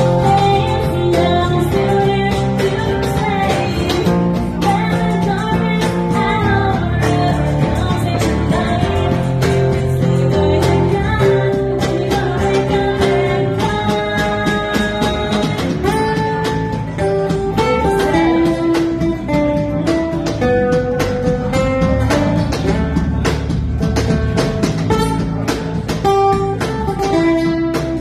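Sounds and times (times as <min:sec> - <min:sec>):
person singing: 0:00.0 - 0:20.4
guitar: 0:00.0 - 0:28.0
steady drum beat: 0:00.0 - 0:28.0.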